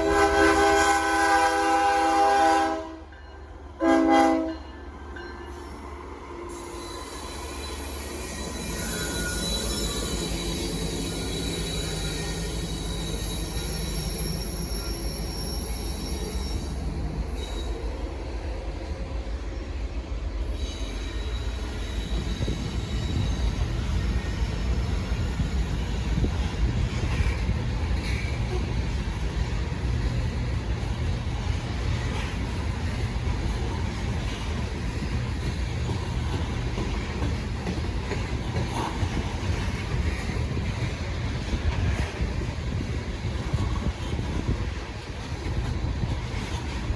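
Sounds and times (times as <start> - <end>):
train wheels rumbling on rails: 0.0 - 46.9
high-pitched wheel squeal: 6.5 - 17.8, 20.5 - 26.3.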